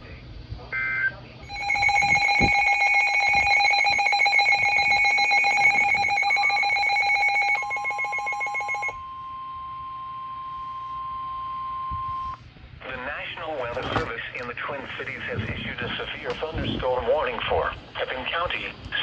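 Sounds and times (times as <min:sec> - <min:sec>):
shrill chord of alert tones: 0:01.4 - 0:09.0
steady warning alarm tone: 0:01.4 - 0:12.3.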